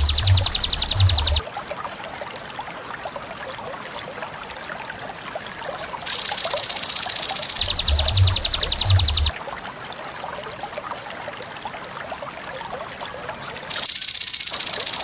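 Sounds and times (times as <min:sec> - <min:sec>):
high-pitched buzzing call: 0:00.0 - 0:01.4, 0:06.1 - 0:09.3
scattered chirping animal calls: 0:00.0 - 0:01.4, 0:06.1 - 0:09.3.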